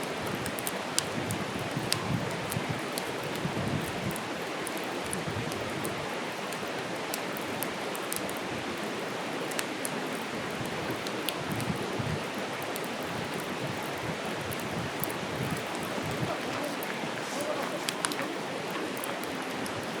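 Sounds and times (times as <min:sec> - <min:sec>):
campfire crackling and hissing: 0:00.0 - 0:20.0.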